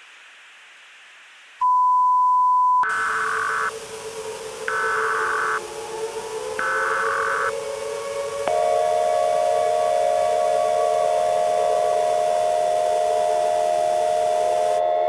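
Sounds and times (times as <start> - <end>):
faint static hiss: 0.0 - 7.5, 8.5 - 14.8
harsh data-header tones: 2.8 - 5.6, 6.6 - 7.6, 8.4 - 15.0
low wavering drone: 3.0 - 15.0
steady beep: 6.6 - 7.5.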